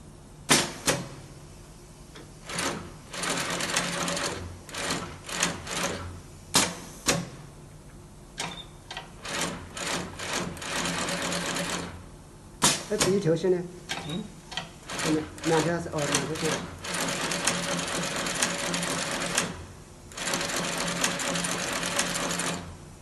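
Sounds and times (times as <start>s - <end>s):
sewing machine stitching: 9.2s - 12.0s, 14.9s - 22.7s.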